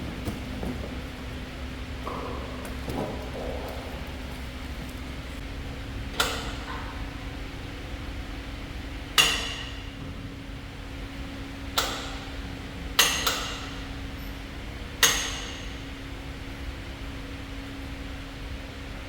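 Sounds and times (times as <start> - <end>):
steady hum: 0.0 - 19.0
sharp metallic knocks: 9.2 - 9.9, 15.0 - 15.8.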